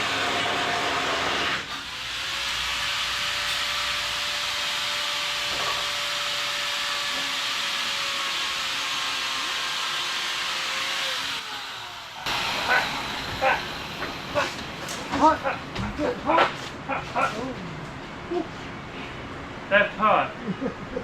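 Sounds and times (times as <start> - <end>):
cutting torch hissing: 7.1 - 15.1.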